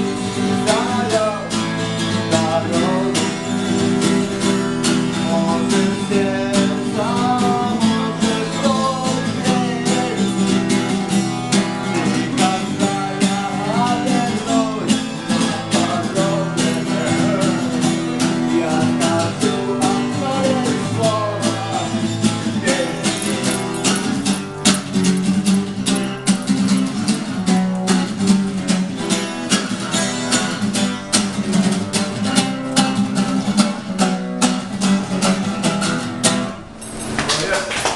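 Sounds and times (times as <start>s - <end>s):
strummed guitar: 0.0s - 37.9s
person singing: 0.3s - 10.6s, 11.6s - 24.2s.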